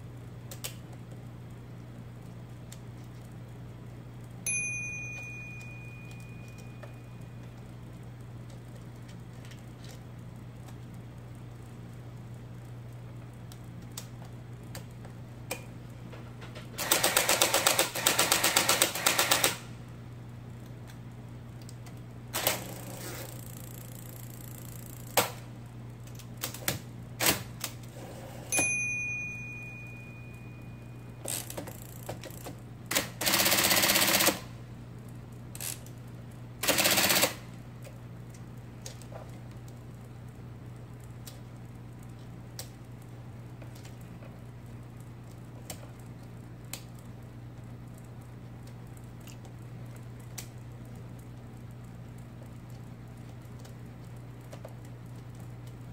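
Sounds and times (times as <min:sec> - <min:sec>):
thin ringing tone: 0:04.4 - 0:07.7, 0:28.5 - 0:31.6
typewriter motor humming: 0:16.8 - 0:19.8, 0:22.3 - 0:25.4, 0:31.2 - 0:34.5, 0:36.6 - 0:37.6.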